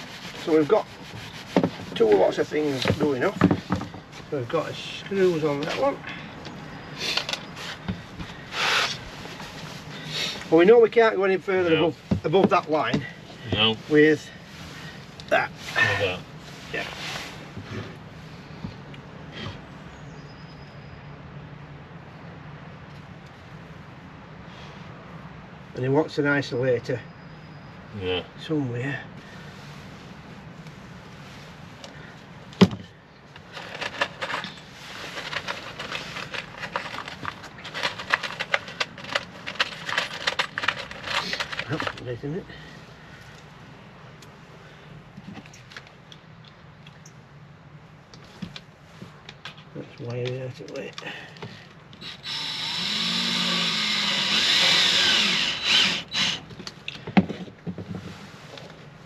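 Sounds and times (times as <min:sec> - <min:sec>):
handheld power tool running: 0:52.0 - 0:56.4.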